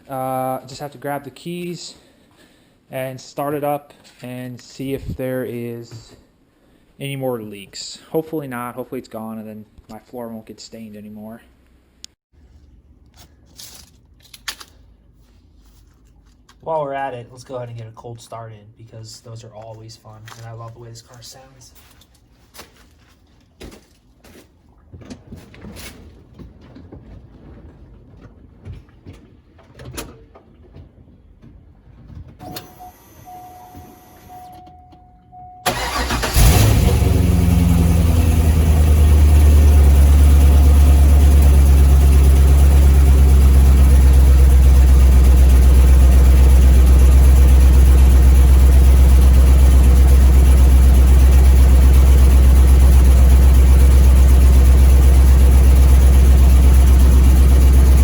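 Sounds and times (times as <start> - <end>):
car engine starting and idling: 35.3 - 58.0
starter motor cranking: 35.7 - 58.0.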